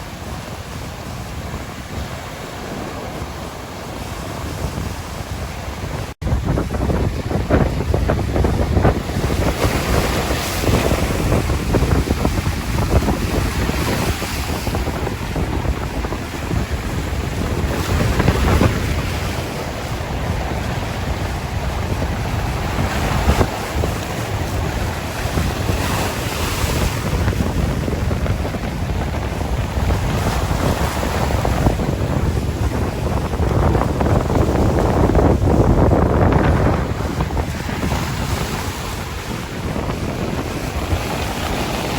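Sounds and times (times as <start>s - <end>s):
waves washing on a shore: 0.0s - 41.9s
wind blowing: 0.0s - 41.9s.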